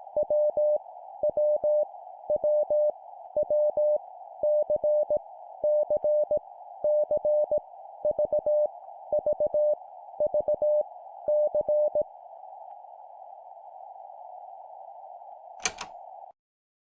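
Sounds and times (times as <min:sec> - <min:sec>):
radio receiver hiss: 0:15.5 - 0:16.3.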